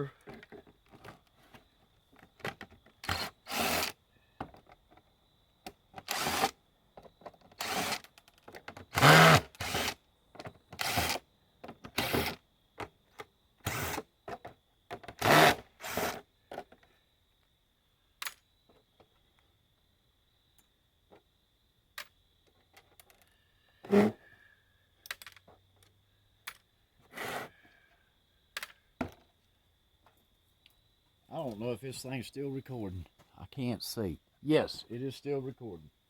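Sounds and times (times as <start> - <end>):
power drill driver running: 3.0 - 3.9, 6.1 - 6.5, 7.6 - 8.1, 8.9 - 10.0, 10.8 - 11.2, 12.0 - 12.3, 13.7 - 14.0.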